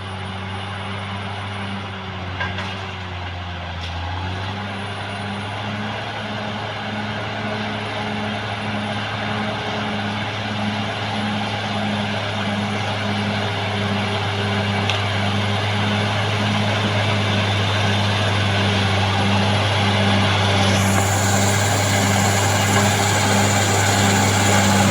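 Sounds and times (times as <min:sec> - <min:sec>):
bulldozer diesel engine running: 0:18.1 - 0:24.9.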